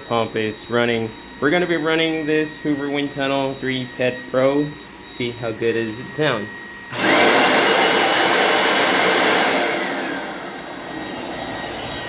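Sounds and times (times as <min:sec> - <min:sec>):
vacuum cleaner motor whining: 0:00.0 - 0:12.0.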